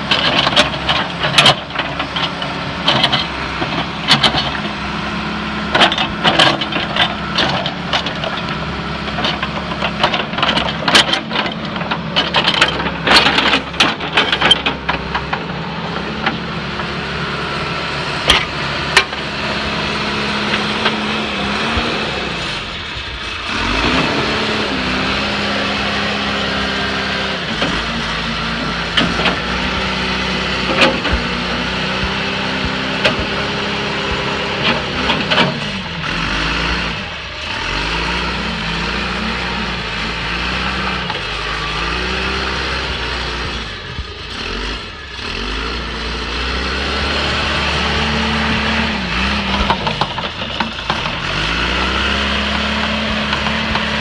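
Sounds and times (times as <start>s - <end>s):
backhoe engine running: 0.0s - 54.0s
sharp knocks and clanks: 9.1s - 16.9s, 28.6s - 35.7s.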